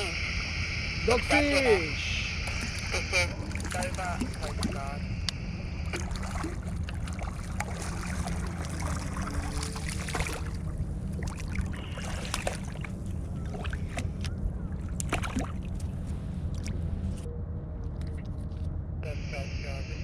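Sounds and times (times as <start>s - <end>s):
wind rumble on microphone: 0.0s - 20.0s
water lapping against kayak hull: 2.4s - 4.9s, 5.9s - 17.1s.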